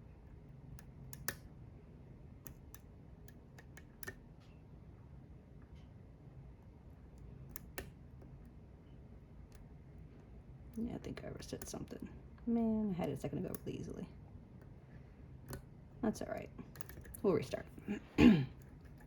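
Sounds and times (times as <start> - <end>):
lock pick clicks: 0.8 - 1.5.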